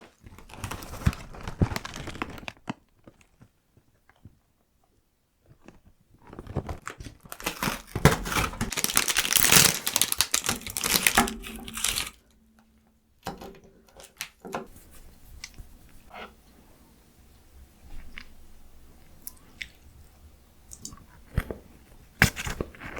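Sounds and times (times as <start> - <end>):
wrapper crinkling and tearing: 0.1 - 3.5, 5.8 - 12.4, 13.3 - 14.5.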